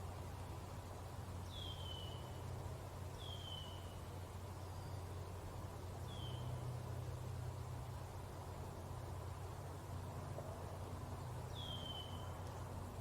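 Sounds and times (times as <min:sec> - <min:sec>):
bird whistled call: 0:01.5 - 0:02.3, 0:03.2 - 0:04.0, 0:06.1 - 0:06.5, 0:11.5 - 0:12.4.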